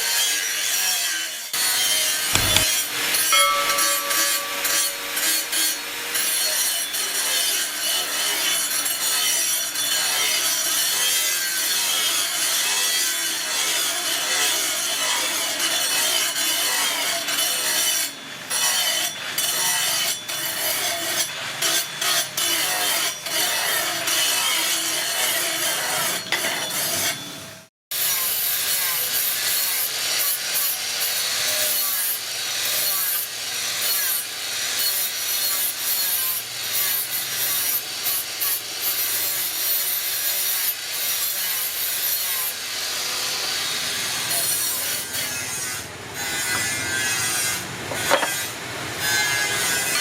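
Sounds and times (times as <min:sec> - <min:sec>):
abrasive scraping on cleaver: 0:02.2 - 0:05.9, 0:47.9 - 0:48.6.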